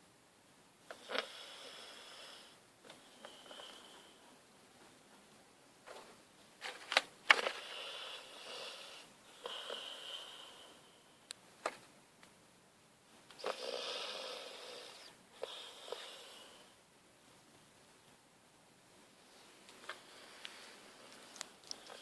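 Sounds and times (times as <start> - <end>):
dog snoring: 0.9 - 2.6, 7.6 - 10.8, 13.4 - 16.7.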